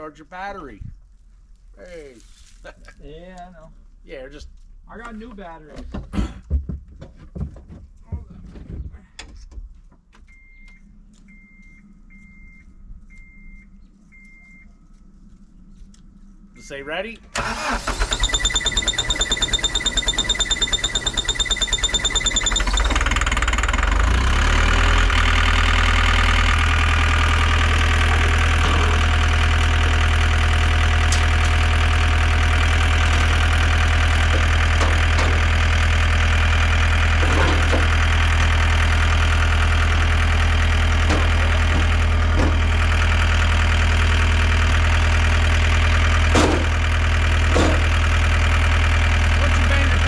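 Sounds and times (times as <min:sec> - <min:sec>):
diesel engine idling: 0:11.3 - 0:50.0.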